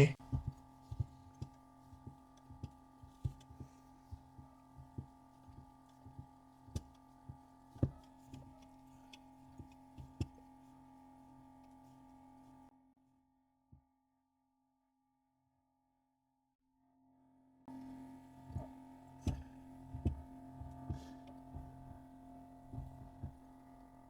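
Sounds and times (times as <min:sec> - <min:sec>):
soft low thumps: 0:00.0 - 0:10.7, 0:17.7 - 0:24.0
faint steady hum: 0:00.0 - 0:12.7, 0:17.7 - 0:24.0.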